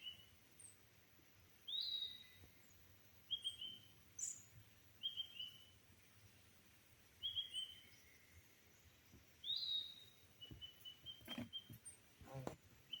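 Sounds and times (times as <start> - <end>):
birds calling: 9.4 - 13.0.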